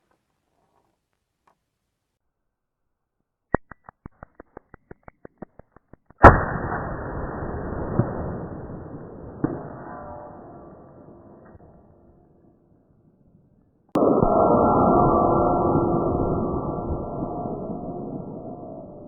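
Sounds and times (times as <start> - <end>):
sharp clicks: 3.5 - 6.2.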